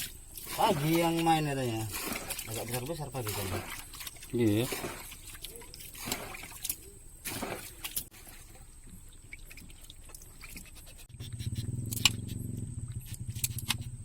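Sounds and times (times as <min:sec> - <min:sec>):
small engine running: 0:11.1 - 0:14.0.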